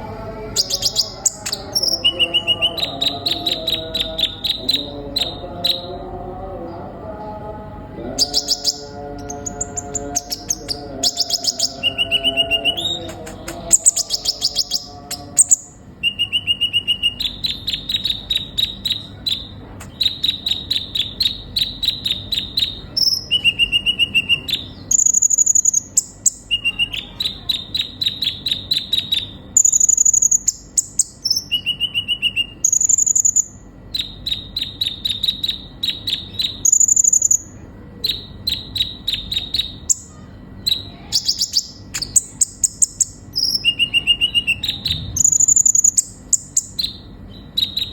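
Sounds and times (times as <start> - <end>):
sunbird singing ticking trills: 0.5 - 5.9, 8.2 - 47.9.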